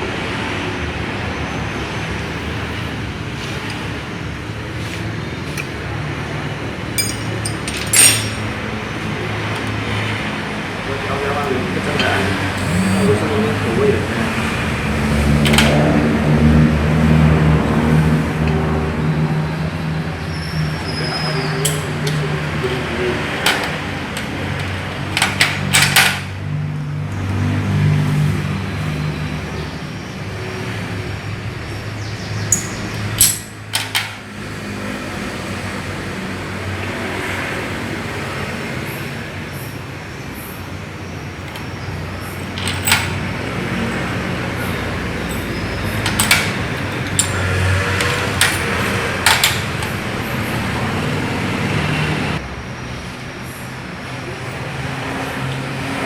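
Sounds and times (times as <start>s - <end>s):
engine running: 2.0s - 20.2s.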